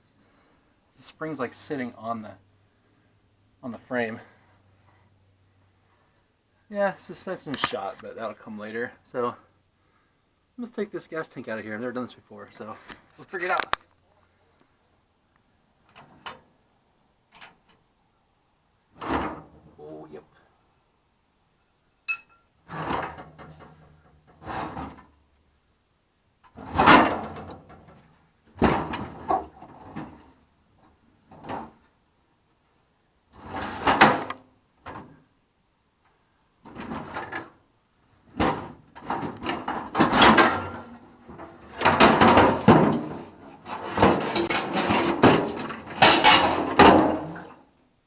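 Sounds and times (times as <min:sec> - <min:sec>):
metal scraping and clunking: 0:22.2 - 0:25.1, 0:26.5 - 0:31.9, 0:33.3 - 0:35.2, 0:36.6 - 0:37.6, 0:38.2 - 0:47.6.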